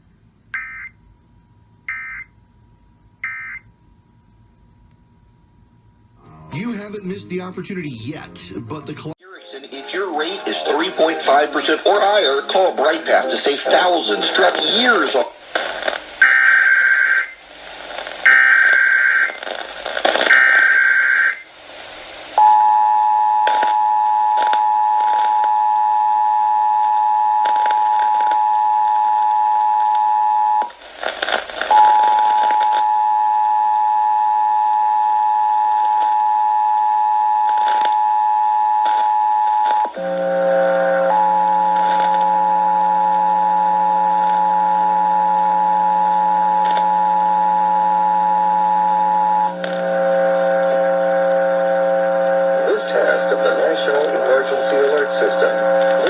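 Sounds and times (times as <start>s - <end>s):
low buzzing hum: 0.4s - 9.2s, 38.4s - 56.0s.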